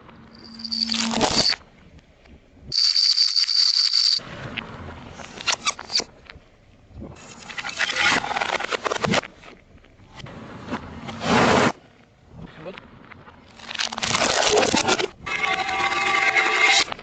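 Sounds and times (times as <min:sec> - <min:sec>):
objects crunching under car tyre: 0:13.5 - 0:15.1.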